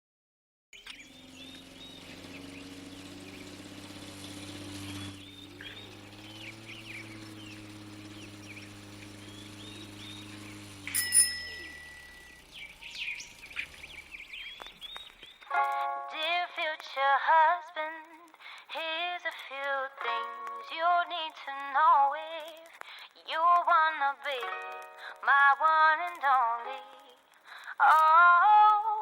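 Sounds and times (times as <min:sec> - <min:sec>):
birds chirping: 0:00.8 - 0:15.8
sharp bright ringing hit: 0:10.9 - 0:12.4.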